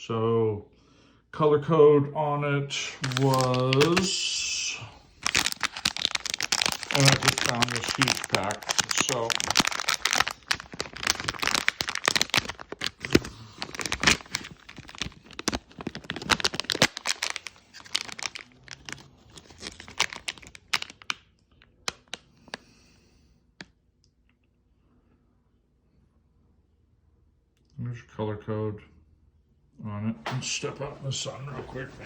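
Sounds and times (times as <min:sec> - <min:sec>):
plastic pack crinkling: 0:02.7 - 0:22.7.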